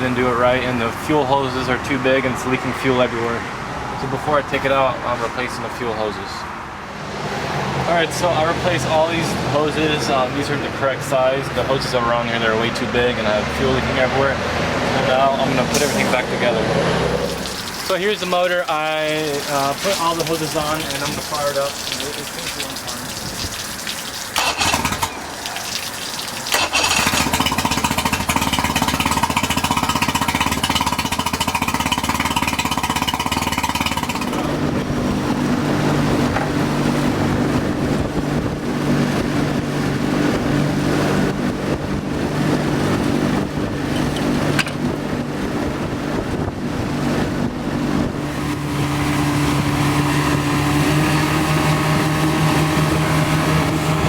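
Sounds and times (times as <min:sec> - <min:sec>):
outboard motor starting and idling: 0:15.6 - 0:54.0.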